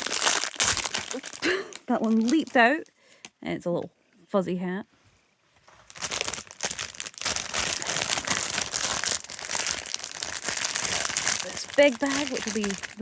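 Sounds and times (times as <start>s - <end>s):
plastic bag crinkling: 0.0s - 2.9s, 5.7s - 13.0s.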